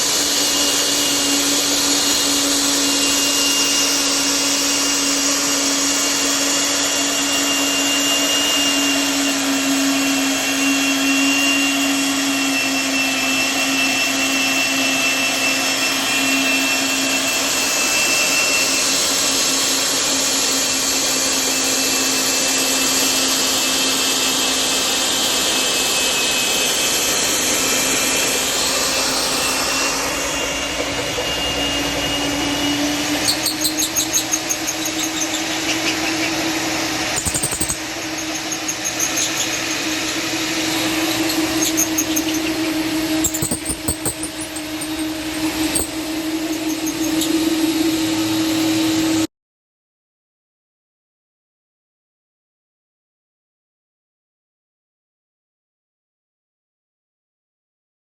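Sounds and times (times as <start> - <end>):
electric drill motor whining hum: 0.0 - 49.3.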